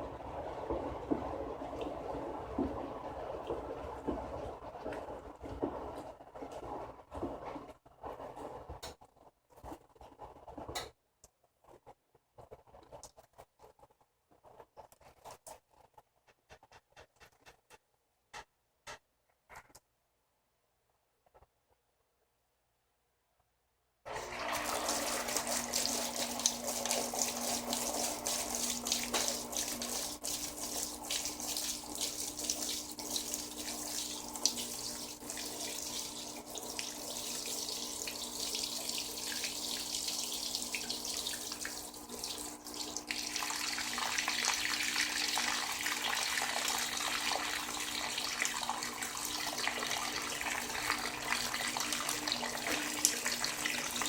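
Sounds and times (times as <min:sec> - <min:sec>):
water rushing into washing machine: 0:00.0 - 0:07.4, 0:24.1 - 0:54.0.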